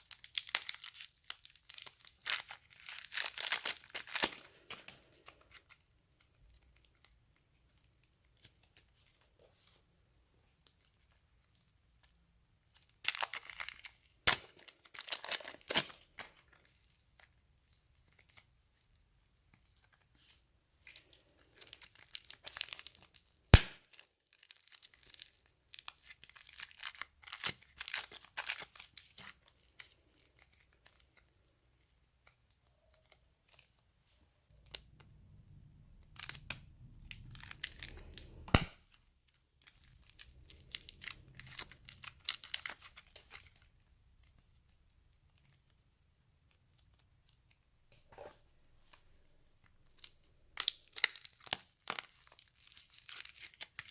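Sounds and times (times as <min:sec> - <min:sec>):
slime crackling and tearing: 0:00.0 - 0:04.8, 0:12.8 - 0:17.3, 0:21.5 - 0:31.2, 0:36.0 - 0:38.8, 0:39.6 - 0:43.7, 0:49.9 - 0:53.9
sharp slime pops: 0:23.6 - 0:23.9, 0:38.5 - 0:38.8.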